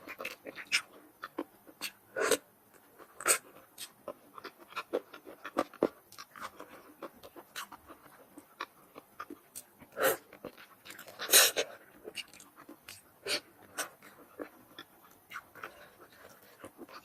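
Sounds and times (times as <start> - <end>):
person chewing and smacking: 0.0 - 17.0.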